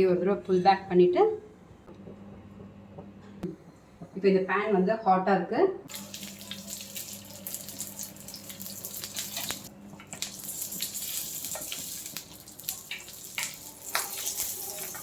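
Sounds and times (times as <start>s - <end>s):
spring roll sizzling in a pan: 5.9s - 15.0s.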